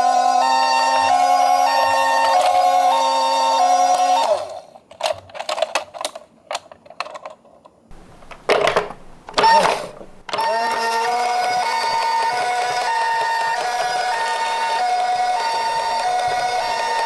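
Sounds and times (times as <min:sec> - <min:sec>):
two-tone ambulance siren: 0:00.0 - 0:04.0
toy cars clicking and rattling: 0:03.6 - 0:17.0.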